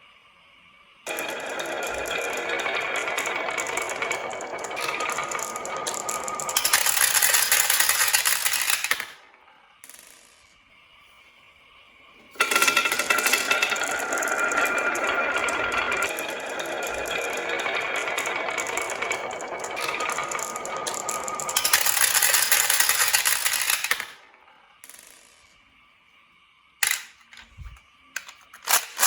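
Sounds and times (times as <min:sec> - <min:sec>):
marbles rattling down a track: 0:01.1 - 0:09.2, 0:09.8 - 0:10.6, 0:12.3 - 0:25.6.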